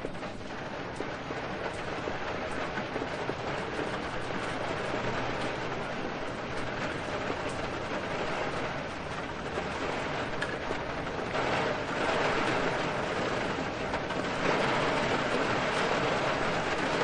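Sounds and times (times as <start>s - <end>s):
heavy rain with wind: 0.0s - 17.0s.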